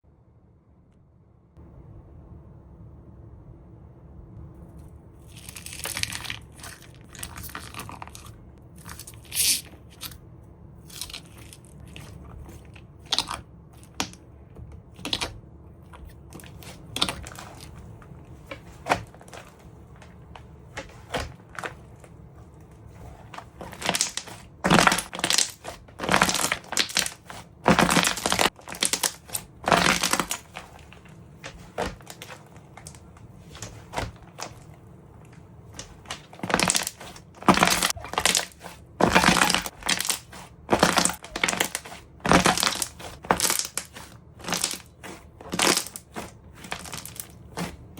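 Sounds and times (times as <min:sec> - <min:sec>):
slime squishing crunchily: 0:04.8 - 0:47.9.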